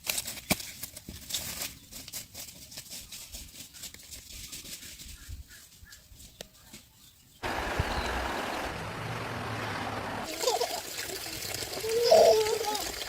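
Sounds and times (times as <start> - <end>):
running water trickling: 10.2 - 13.0.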